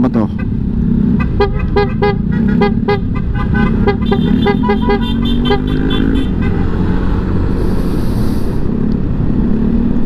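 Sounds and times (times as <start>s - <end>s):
motorcycle engine: 0.0s - 10.0s
motorcycle horn beeps: 1.2s - 6.8s.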